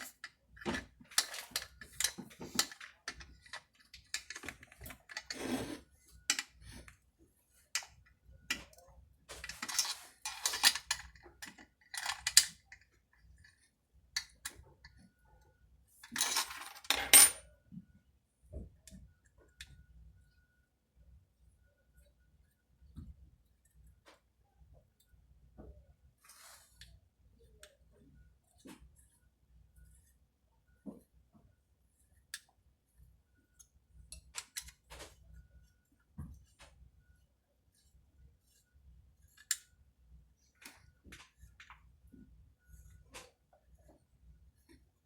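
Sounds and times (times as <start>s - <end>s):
metal tools clinking: 0.0s - 5.4s, 9.4s - 12.5s, 16.1s - 17.4s.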